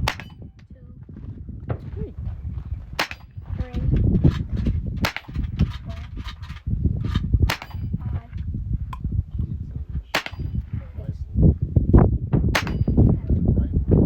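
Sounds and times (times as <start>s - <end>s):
rifle shots: 0.0s - 0.4s, 3.0s - 3.3s, 5.0s - 5.8s, 7.5s - 7.9s, 10.2s - 10.6s, 12.6s - 13.0s
low steady rumble: 0.0s - 14.0s.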